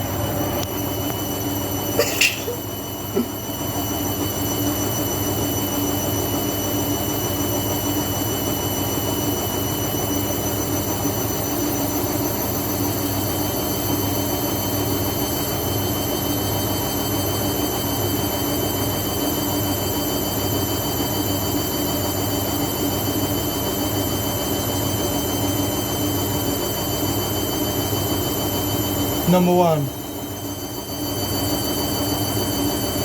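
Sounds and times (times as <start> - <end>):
thin high whine: 0.0 - 5.8, 27.8 - 33.0
washing machine drone: 0.0 - 33.0.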